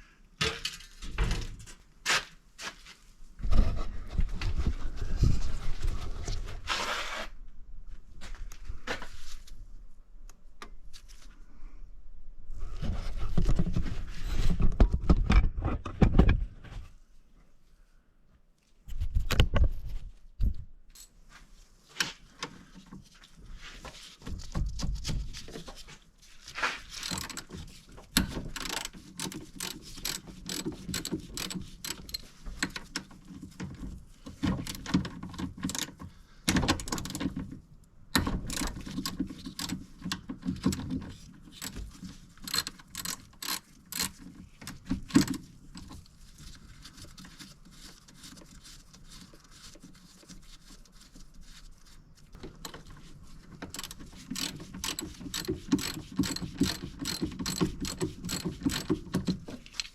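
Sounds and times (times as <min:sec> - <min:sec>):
ratchet wrench clicking: 0:27.0 - 0:27.5, 0:28.2 - 0:32.8, 0:42.5 - 0:44.2, 0:53.7 - 0:59.9.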